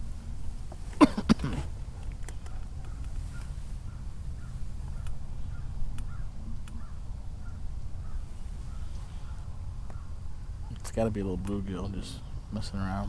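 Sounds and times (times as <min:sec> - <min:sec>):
faint bird calls: 0:00.9 - 0:13.0
light clicks: 0:02.0 - 0:03.6, 0:04.9 - 0:06.9.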